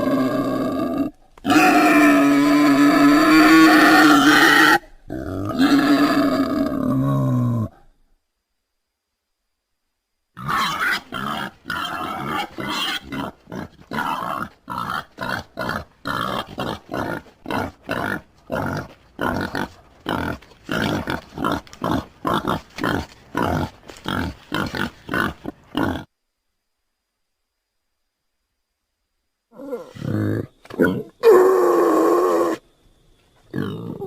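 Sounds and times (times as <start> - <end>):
wild pig grunting: 0.0 - 7.8, 10.4 - 26.1, 29.5 - 32.6, 33.5 - 34.0.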